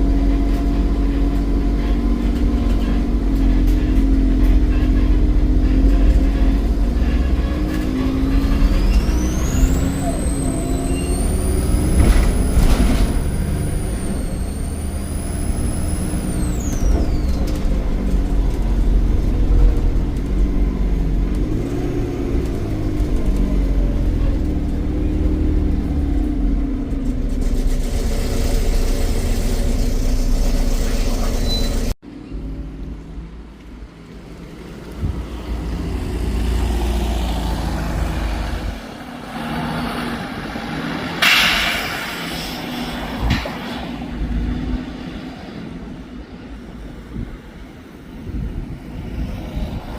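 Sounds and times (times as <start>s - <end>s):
bus diesel engine rumble: 0.0s - 49.9s
turbocharger whistle: 7.2s - 12.5s.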